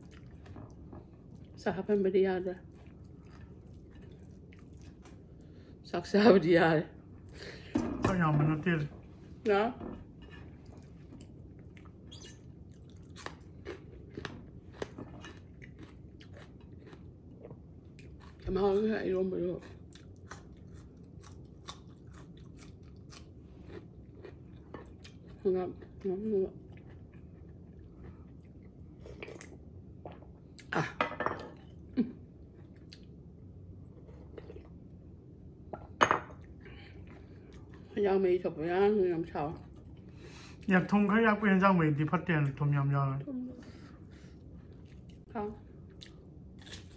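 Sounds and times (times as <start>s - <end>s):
person chewing food: 0.0s - 1.6s, 2.7s - 5.4s, 10.4s - 18.4s, 19.6s - 25.9s, 26.6s - 30.7s, 33.8s - 34.9s, 44.2s - 46.9s.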